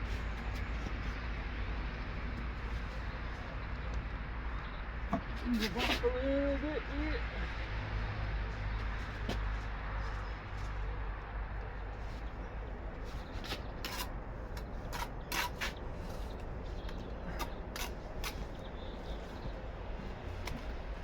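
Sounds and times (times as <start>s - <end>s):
trowel scraping: 13.1s - 16.5s, 17.3s - 18.6s.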